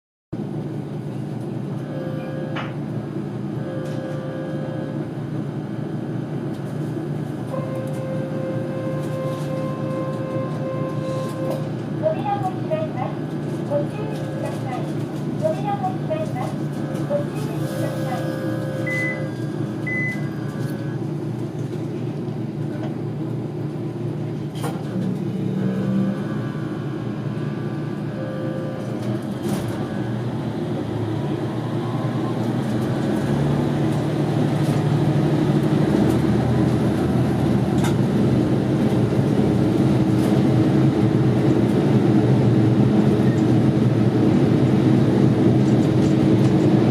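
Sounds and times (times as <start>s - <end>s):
diesel engine drone: 0.4s - 46.9s
short high beep: 17.7s - 21.0s.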